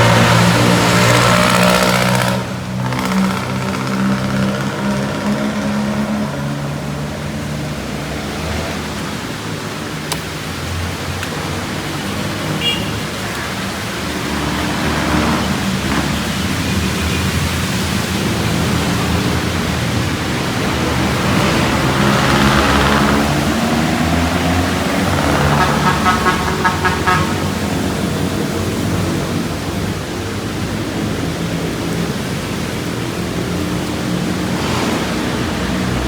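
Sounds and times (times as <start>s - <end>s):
traffic engines running: 0.0s - 36.0s
vehicle passing with tyre hiss: 0.0s - 36.0s
warbling car horn: 24.9s - 27.7s.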